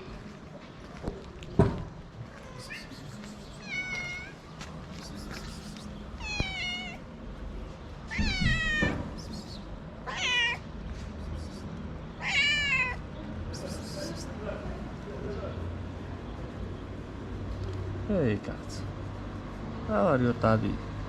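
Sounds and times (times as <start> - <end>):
cat meowing: 2.3 - 3.0, 3.6 - 4.4, 6.2 - 7.0, 8.1 - 9.0, 10.0 - 10.6, 12.2 - 13.0.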